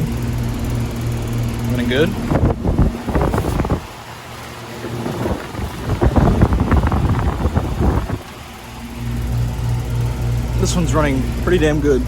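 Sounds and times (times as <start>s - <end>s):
compressor hum: 0.0s - 12.0s
condenser fan rushing: 0.0s - 12.0s
wind buffeting microphone: 2.2s - 8.7s.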